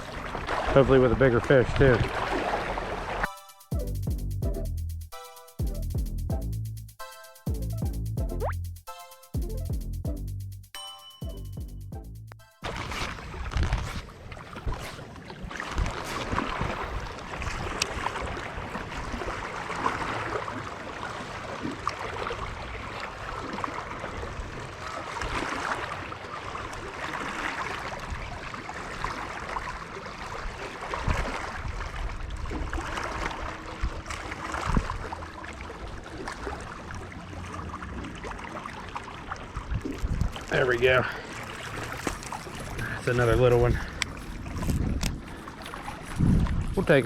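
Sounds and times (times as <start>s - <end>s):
small waves lapping: 0.0s - 3.3s, 12.6s - 47.0s
wind rumbling on microphone: 12.8s - 19.3s, 30.4s - 35.2s, 39.4s - 47.0s.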